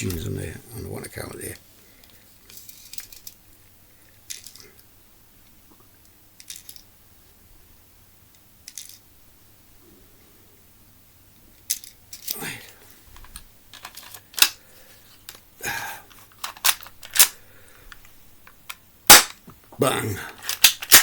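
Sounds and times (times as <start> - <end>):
pistol clicking and rattling: 16.4 - 17.4, 20.4 - 21.0.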